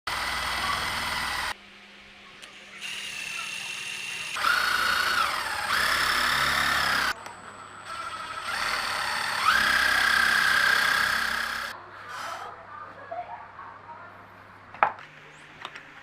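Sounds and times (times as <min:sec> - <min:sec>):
power tool motor whining: 0:00.1 - 0:01.6, 0:02.6 - 0:07.2, 0:07.8 - 0:11.7.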